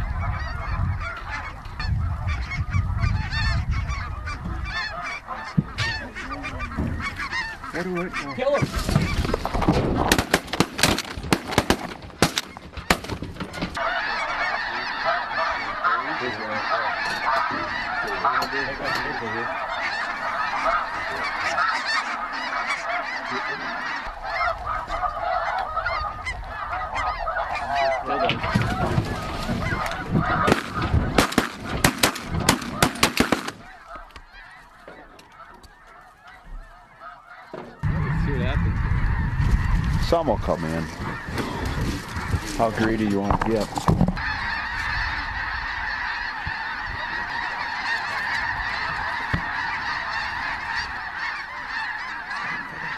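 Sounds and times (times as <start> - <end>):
flock of geese calling: 0.0 - 52.9
shotgun fire: 30.5 - 33.6.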